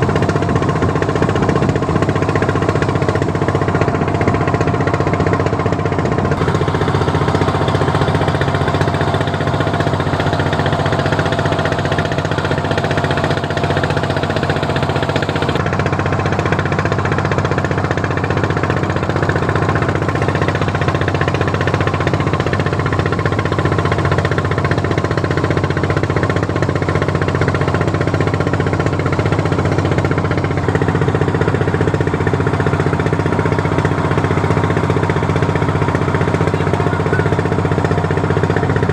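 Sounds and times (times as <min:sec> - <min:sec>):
boat engine knocking: 0:00.0 - 0:38.9.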